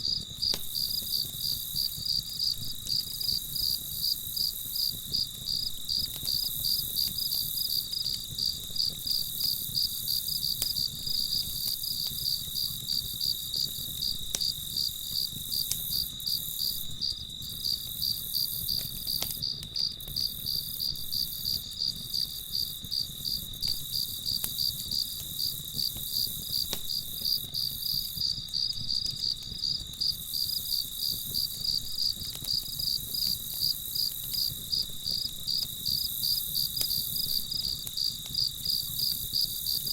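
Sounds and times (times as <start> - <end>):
crickets chirping: 0.0 - 39.9
faint crackling clicks: 0.4 - 1.4, 10.6 - 12.8, 13.6 - 14.6, 15.2 - 16.0, 18.6 - 20.4, 23.6 - 39.9.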